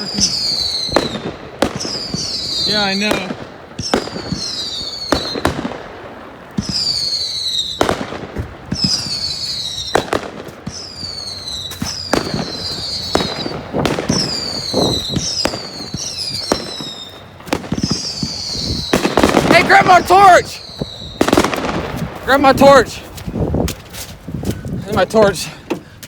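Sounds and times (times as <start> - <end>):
falling whistle of fireworks: 0.0 - 22.8
fireworks bangs: 0.0 - 26.0.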